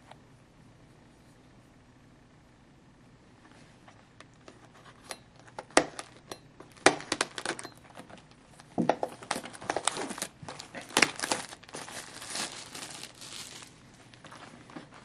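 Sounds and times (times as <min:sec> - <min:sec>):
card packaging crackling: 0:05.4 - 0:14.4.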